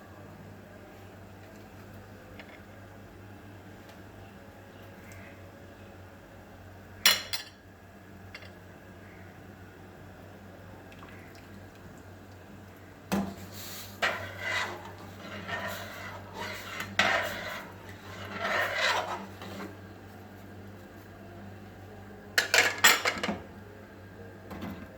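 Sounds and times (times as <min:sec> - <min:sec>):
low steady hum: 0:00.0 - 0:24.9
utensil scraping against pot: 0:13.4 - 0:19.8.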